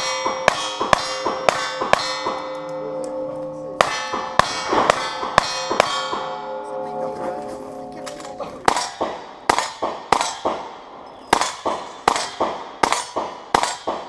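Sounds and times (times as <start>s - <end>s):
gunshots: 3.8s - 6.4s, 8.1s - 14.0s
steel targets clanging: 3.8s - 13.9s.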